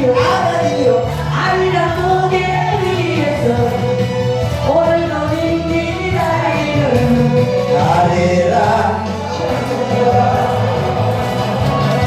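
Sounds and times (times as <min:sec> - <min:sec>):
instrumental trot music: 0:00.0 - 0:12.0.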